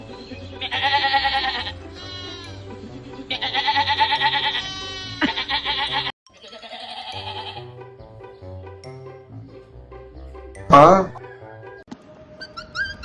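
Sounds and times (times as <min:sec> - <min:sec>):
background music with bass: 0:00.0 - 0:06.1, 0:07.2 - 0:11.8
long wavering bleats: 0:00.6 - 0:02.6, 0:03.3 - 0:07.7.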